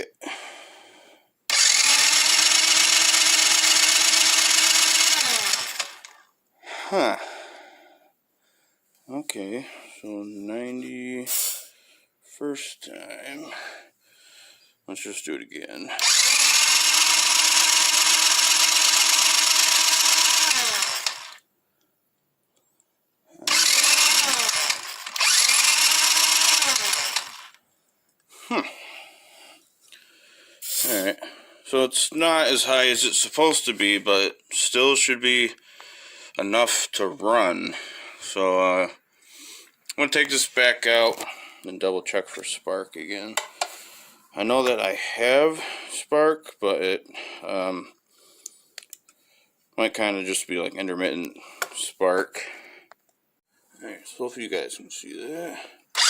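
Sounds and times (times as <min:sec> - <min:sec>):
engine cranking beat: 0:01.5 - 0:06.1, 0:16.0 - 0:21.4, 0:23.5 - 0:27.6
starter motor whine: 0:01.5 - 0:06.2, 0:16.0 - 0:21.4, 0:23.5 - 0:27.6.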